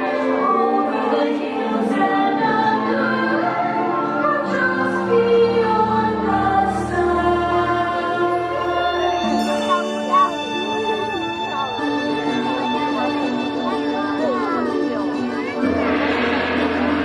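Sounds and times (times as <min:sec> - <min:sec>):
choir singing held notes: 0:00.4 - 0:10.4.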